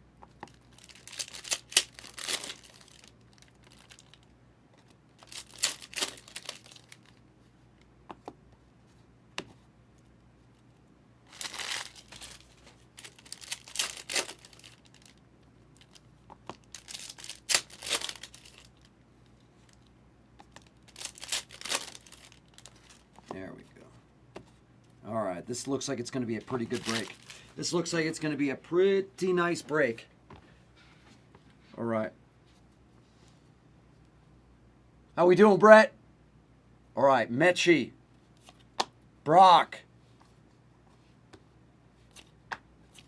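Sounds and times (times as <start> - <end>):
card pack wrappers tearing: 0.5 - 4.2, 5.2 - 7.2, 11.3 - 15.2, 15.8 - 18.9, 20.7 - 23.1, 26.4 - 27.5.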